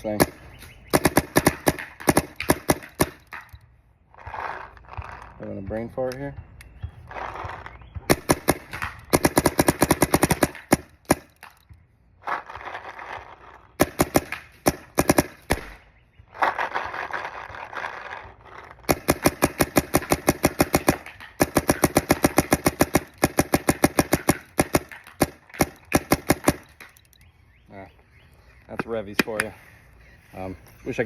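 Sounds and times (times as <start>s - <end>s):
paintball marker firing: 0.0s - 3.7s, 6.6s - 11.8s, 13.8s - 16.9s, 18.8s - 27.3s.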